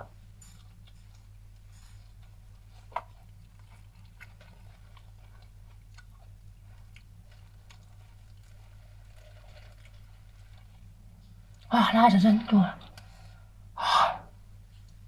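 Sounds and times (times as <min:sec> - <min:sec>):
person chewing crunchy food: 0:00.0 - 0:11.7.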